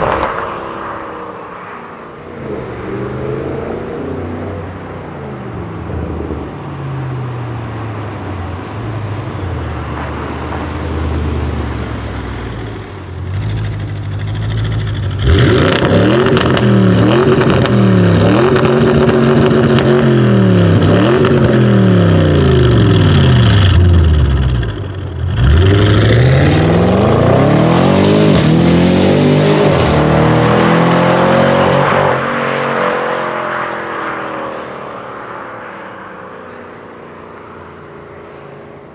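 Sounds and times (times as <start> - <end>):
car engine revving: 0.0 - 38.9
exhaust pops: 12.6 - 26.2.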